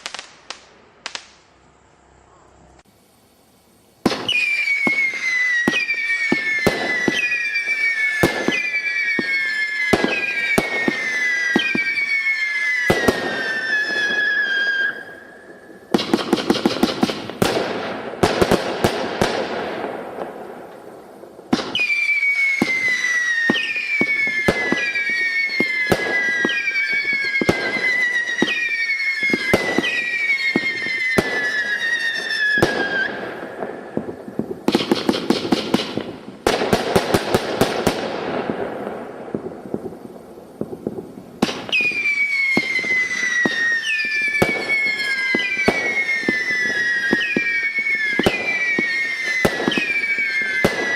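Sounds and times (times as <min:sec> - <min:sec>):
firework shots: 0:00.0 - 0:01.6, 0:04.0 - 0:50.9
firework crackling: 0:00.0 - 0:50.9
whistles falling in pitch: 0:04.2 - 0:16.0, 0:21.7 - 0:33.1, 0:41.7 - 0:50.9.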